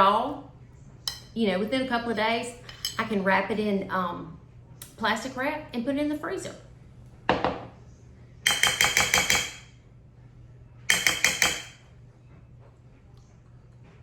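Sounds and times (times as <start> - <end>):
utensil clattering against a dish: 8.5 - 9.7, 10.9 - 11.8.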